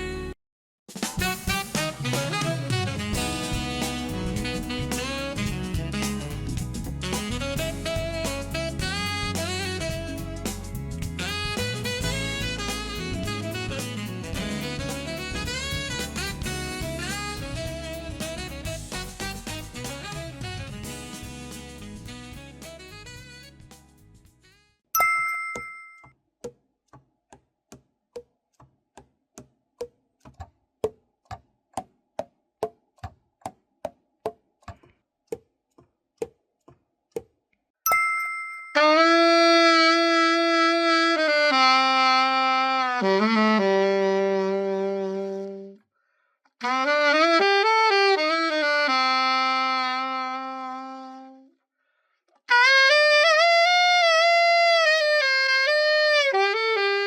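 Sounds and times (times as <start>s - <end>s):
saxophone held notes with vibrato: 0.0s - 0.4s, 1.2s - 23.6s, 38.8s - 45.8s, 46.6s - 51.5s, 52.5s - 57.0s
bell-like ding: 25.0s - 26.1s, 37.9s - 38.8s.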